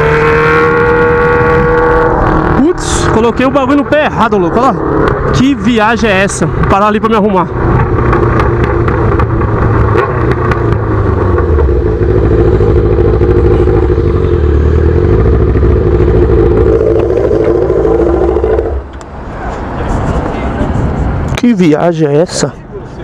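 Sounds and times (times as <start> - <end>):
loud motorcycle engine running: 0.0 - 19.0.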